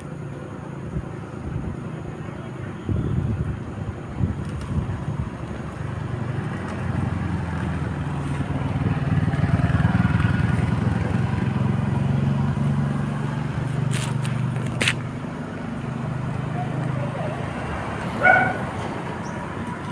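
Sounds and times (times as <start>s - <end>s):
vehicle engine running: 5.2s - 19.9s.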